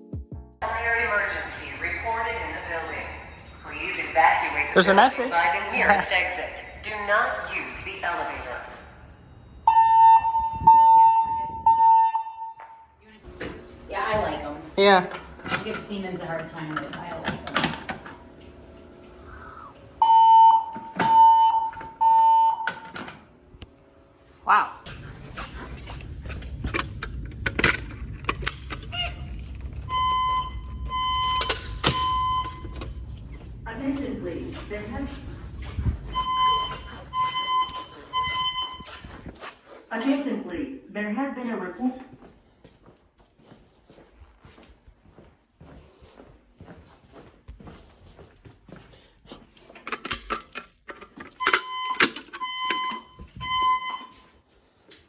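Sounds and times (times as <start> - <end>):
fire alarm beep: 0.6 - 14.6, 19.9 - 23.2, 29.7 - 33.6, 34.5 - 39.2, 51.4 - 54.5.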